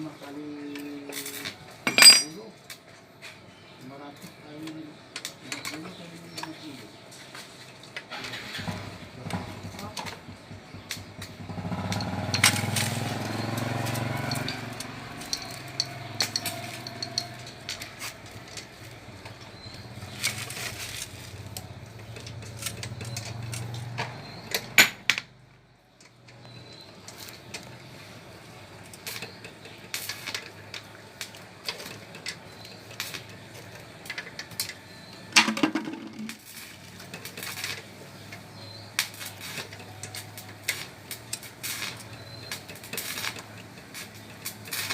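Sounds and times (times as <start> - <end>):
metal tools clinking: 0.8 - 2.6, 11.7 - 25.3.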